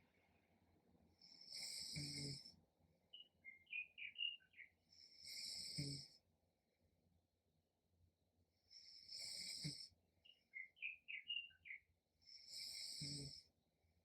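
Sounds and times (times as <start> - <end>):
person snoring: 1.4 - 2.5, 5.2 - 6.2, 8.8 - 9.9, 12.5 - 13.4.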